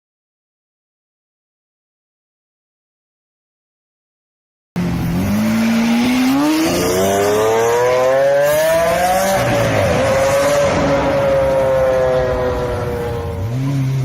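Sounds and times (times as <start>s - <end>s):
sports car engine accelerating: 4.8s - 14.0s.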